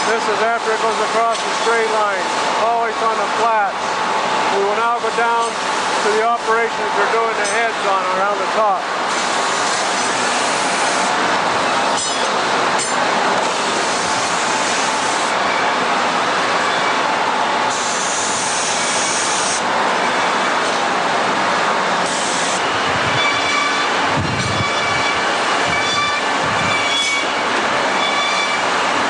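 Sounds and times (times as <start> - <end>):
abrasive polishing hiss: 12.8 - 15.3, 17.7 - 19.7, 22.0 - 22.6.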